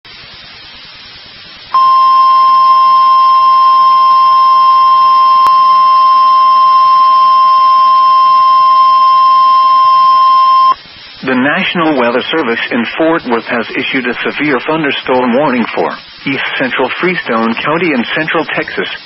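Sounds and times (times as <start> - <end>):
faint hiss: 0.1 - 4.1, 10.7 - 19.0.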